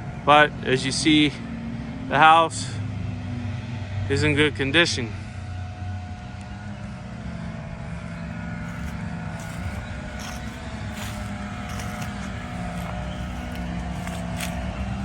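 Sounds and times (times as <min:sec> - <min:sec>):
engine drone with whine: 0:05.7 - 0:15.0.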